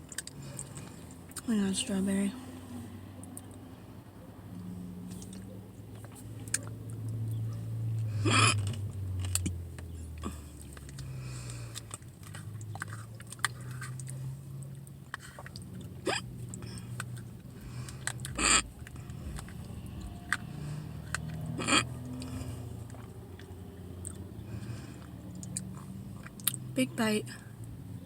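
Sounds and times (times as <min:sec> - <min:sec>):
quiet chewing: 0:00.0 - 0:01.5, 0:02.6 - 0:26.8
low car hum: 0:00.0 - 0:28.0
loud hiccups: 0:08.1 - 0:08.9, 0:16.0 - 0:16.8, 0:18.2 - 0:18.8, 0:21.5 - 0:22.5.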